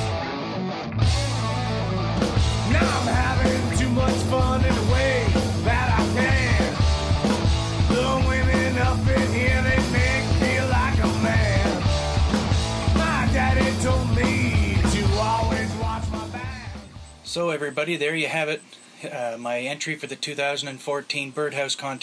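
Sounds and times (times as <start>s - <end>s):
rock music with singing: 0.0s - 17.4s.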